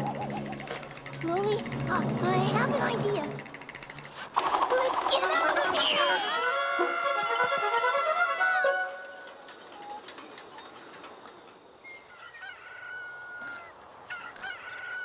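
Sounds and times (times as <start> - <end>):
rooster crowing: 6.3 - 9.2, 11.8 - 15.0.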